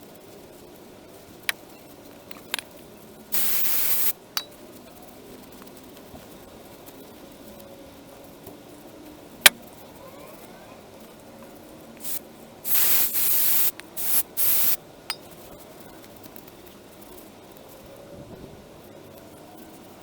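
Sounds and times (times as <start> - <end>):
hissing spray bursts: 3.3 - 4.2, 12.0 - 14.8.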